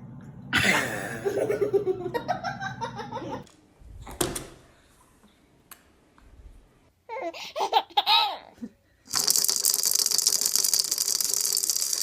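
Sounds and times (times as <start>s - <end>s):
fast rattling: 9.1s - 12.0s.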